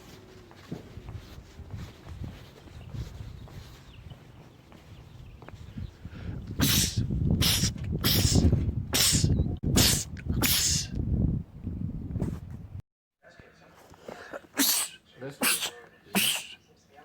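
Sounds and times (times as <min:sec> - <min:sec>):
man sneezing: 0:06.6 - 0:11.0, 0:14.1 - 0:16.6.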